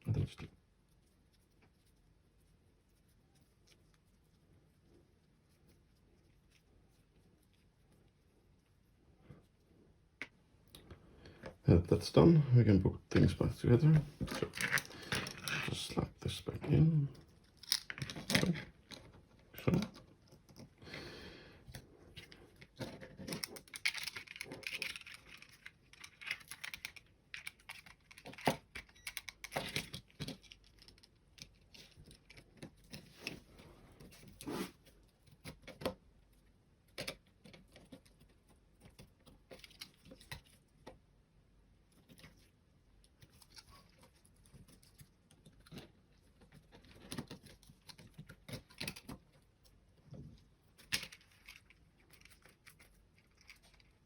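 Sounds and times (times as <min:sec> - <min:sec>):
plastic mouse parts clicking: 0:22.7 - 0:33.0.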